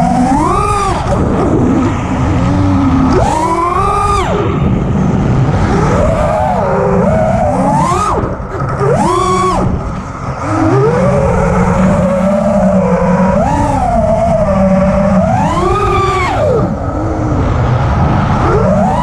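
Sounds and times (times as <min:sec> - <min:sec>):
drone motors whining: 0:00.0 - 0:19.0.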